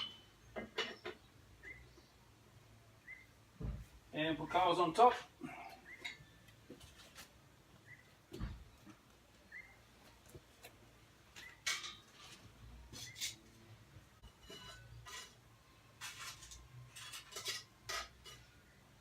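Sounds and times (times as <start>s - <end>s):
metallic clinks and scrapes: 11.5s - 18.8s.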